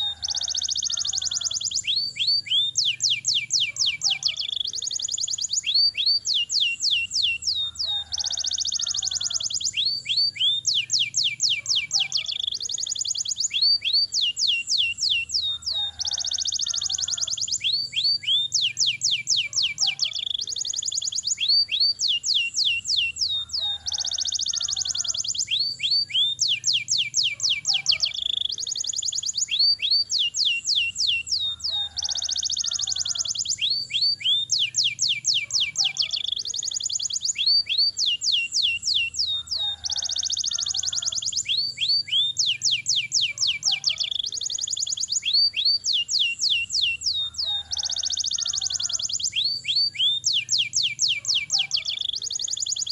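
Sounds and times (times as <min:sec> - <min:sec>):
canary singing trills: 0:00.0 - 0:52.9.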